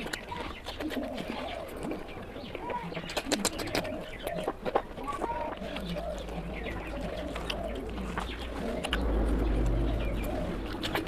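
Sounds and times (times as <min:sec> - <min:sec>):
lip-smacking clicks: 0:00.0 - 0:11.0
wet chewing: 0:00.0 - 0:11.0
low wavering hum: 0:06.5 - 0:11.0
low rumble: 0:08.0 - 0:11.0.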